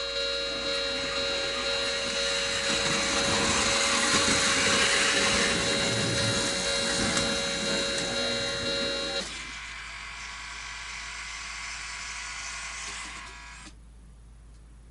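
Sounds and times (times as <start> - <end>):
electronic warning tones: 0.0 - 9.4
model train motor whir: 0.0 - 13.7.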